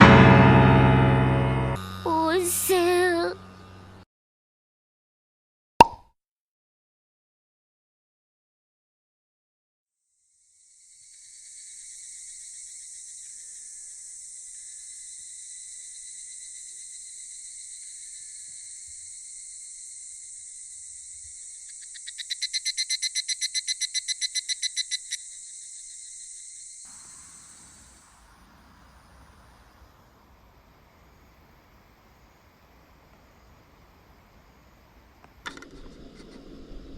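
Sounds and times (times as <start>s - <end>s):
insects high-pitched shrill: 10.2s - 29.1s
insect rapidly pulsing call: 10.3s - 30.0s
faint outdoor background noise: 10.6s - 36.9s.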